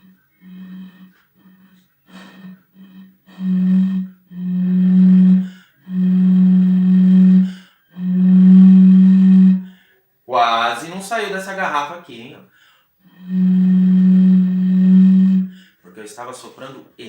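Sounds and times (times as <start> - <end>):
blowing across bottle neck: 0.0 - 10.0, 12.5 - 15.8
person talking: 10.3 - 12.5, 15.9 - 17.0.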